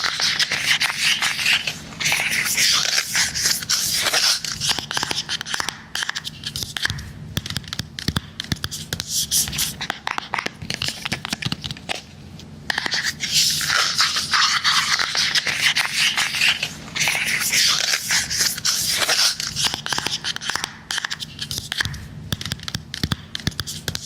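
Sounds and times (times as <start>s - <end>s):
fingernails tapping on device: 20.4s - 24.0s.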